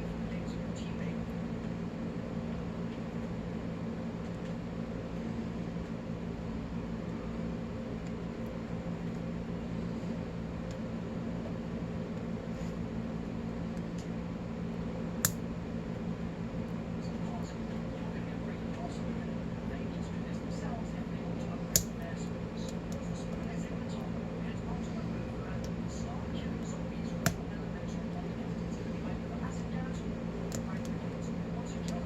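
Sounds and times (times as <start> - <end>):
fan-like background hum: 0.0 - 32.0.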